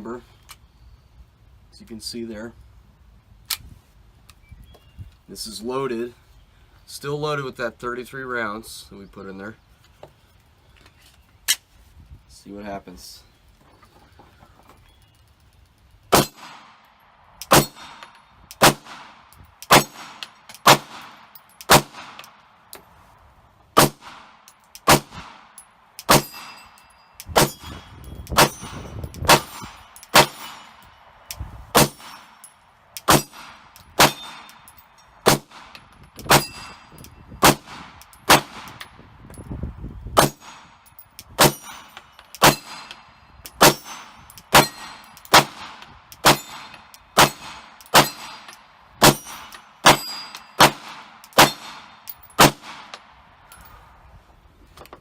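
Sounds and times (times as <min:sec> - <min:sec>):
pistol shots: 0:16.1 - 0:16.8, 0:17.4 - 0:22.4, 0:23.8 - 0:26.6, 0:28.4 - 0:30.8, 0:31.7 - 0:32.4, 0:33.0 - 0:38.8, 0:40.2 - 0:40.8, 0:41.4 - 0:43.0, 0:43.6 - 0:53.0.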